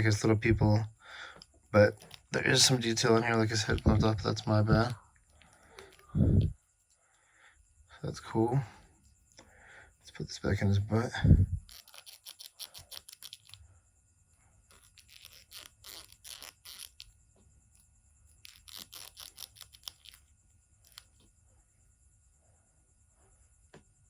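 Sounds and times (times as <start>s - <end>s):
plastic parts clicking and scraping: 1.3s - 6.5s, 11.2s - 13.6s, 14.7s - 17.1s, 18.4s - 20.2s.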